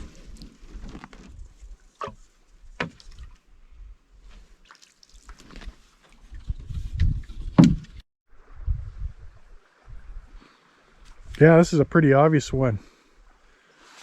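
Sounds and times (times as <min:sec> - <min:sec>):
water sounds: 0:00.0 - 0:14.0
paddle knocking against hull: 0:07.3 - 0:08.0.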